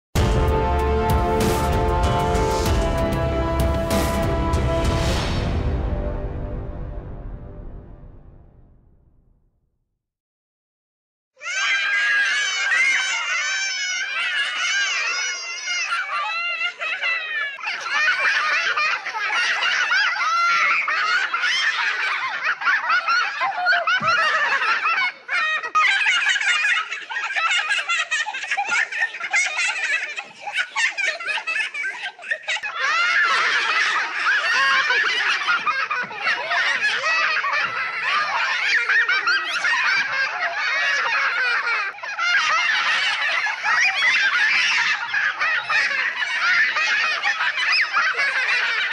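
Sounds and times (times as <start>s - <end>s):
tiny high-pitched voices giggling: 11.4s - 48.9s.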